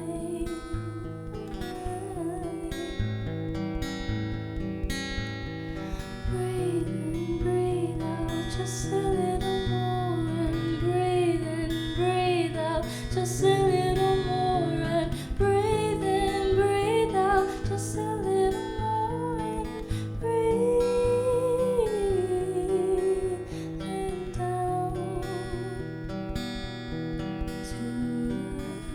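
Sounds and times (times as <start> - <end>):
person singing: 0.0 - 3.2, 6.3 - 25.8
acoustic guitar strumming: 0.0 - 28.9.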